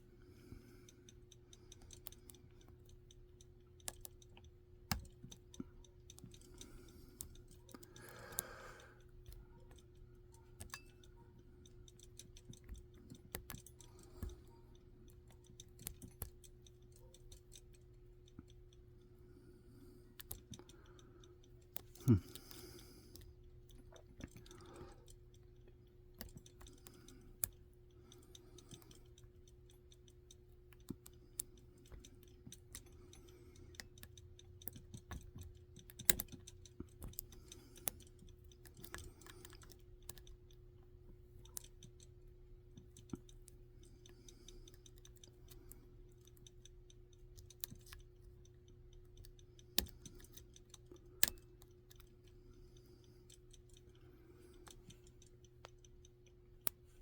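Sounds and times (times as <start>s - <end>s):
lock picks clicking in padlock: 19.8s - 40.8s, 41.4s - 57.0s.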